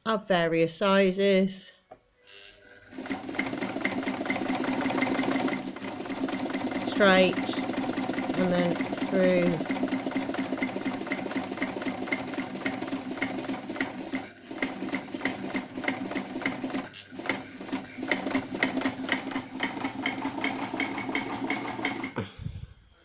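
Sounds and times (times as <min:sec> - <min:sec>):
sewing machine sewing: 0:02.3 - 0:22.2.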